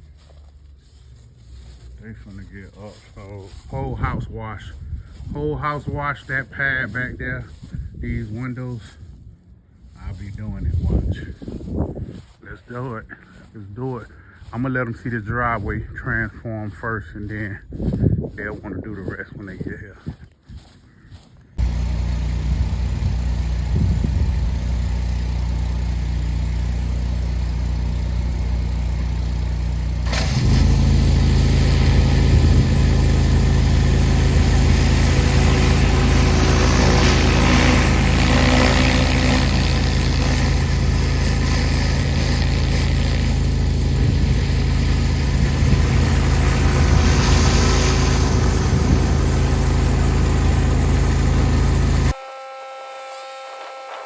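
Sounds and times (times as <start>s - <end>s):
petrol engine running: 21.6s - 54.0s
water spray hissing: 30.0s - 52.2s.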